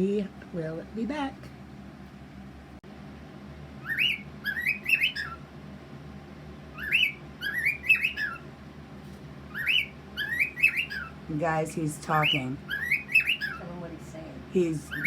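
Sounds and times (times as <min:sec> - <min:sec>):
bird whistling: 0:03.8 - 0:05.4, 0:06.7 - 0:08.5, 0:09.5 - 0:11.2, 0:12.1 - 0:13.7, 0:14.8 - 0:15.0.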